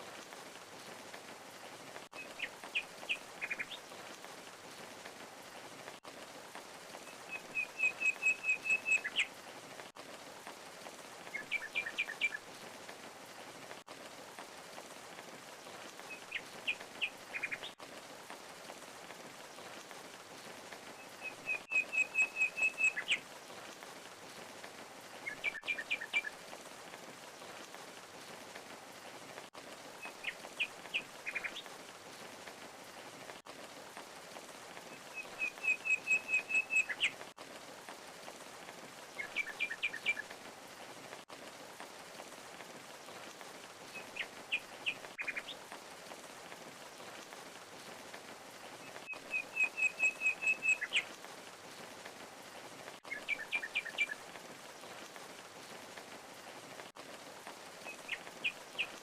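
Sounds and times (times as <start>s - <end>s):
songbird chirping: 2.1s - 4.2s, 6.8s - 9.6s, 10.8s - 13.4s, 15.6s - 17.8s, 18.7s - 26.7s, 30.0s - 32.4s, 34.4s - 37.4s, 38.9s - 40.4s, 42.9s - 46.1s, 48.7s - 51.2s, 53.0s - 56.1s, 57.7s - 59.0s.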